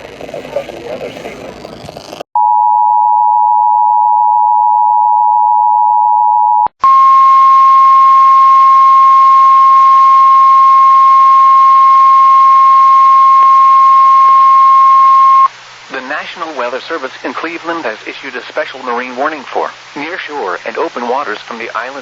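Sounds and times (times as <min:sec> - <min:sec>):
loud steady alarm tone: 0:06.8 - 0:15.5
radio hiss: 0:15.4 - 0:22.0.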